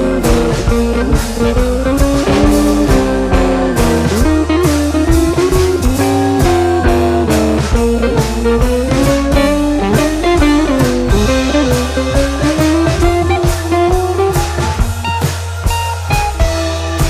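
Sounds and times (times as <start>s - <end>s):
bass: 0.0s - 17.0s
blues electric guitar: 0.0s - 17.0s
steady drum beat: 0.0s - 17.0s.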